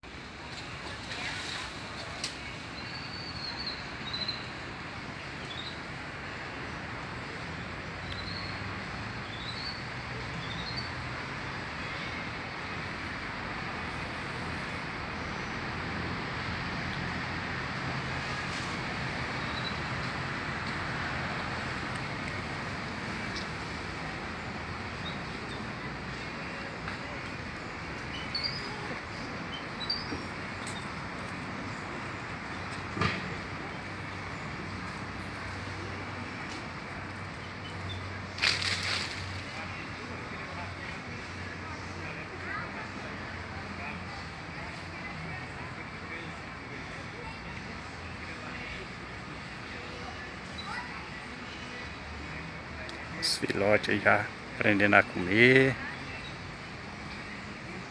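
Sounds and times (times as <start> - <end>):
small birds chirping: 27.6 - 32.8.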